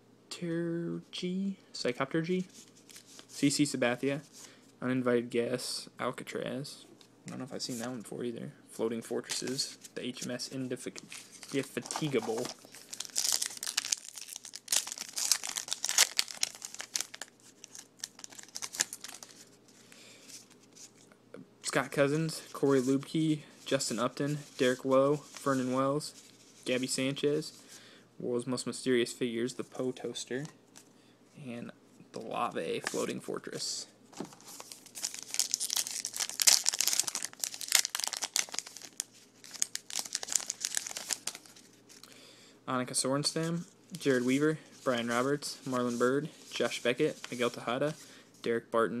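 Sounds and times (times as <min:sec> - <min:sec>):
plastic foil wrapper tearing and crinkling: 0:11.4 - 0:19.4, 0:34.4 - 0:42.1.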